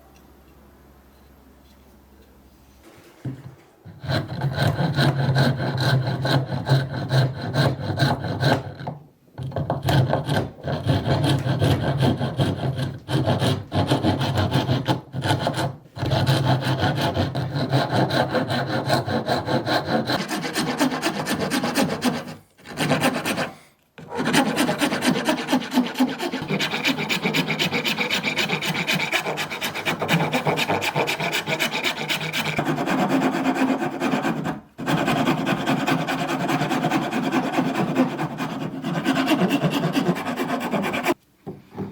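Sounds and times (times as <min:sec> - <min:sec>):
hand sanding strokes: 0:16.5 - 0:41.2.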